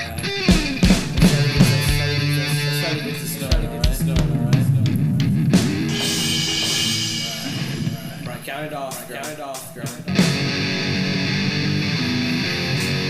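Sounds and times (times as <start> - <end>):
drum kit: 0.0 - 2.5, 3.1 - 11.6
electric guitar chords: 0.0 - 8.9, 10.0 - 13.0
cymbal wash: 5.6 - 9.6.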